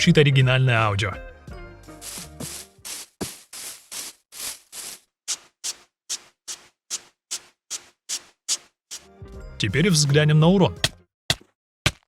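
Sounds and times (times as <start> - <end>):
game footsteps on grass: 2.0 - 9.1.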